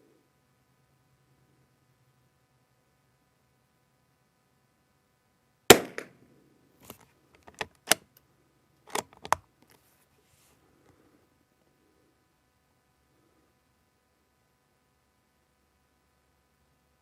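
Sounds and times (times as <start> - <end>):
rifle shot: 5.7 - 6.2
rifle bolt metallic clicks: 8.9 - 9.4.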